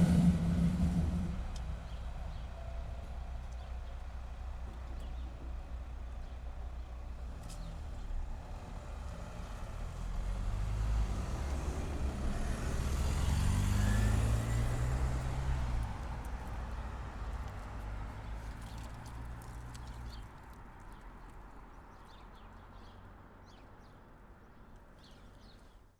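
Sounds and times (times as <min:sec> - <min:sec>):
electric train passing: 0:00.0 - 0:03.4.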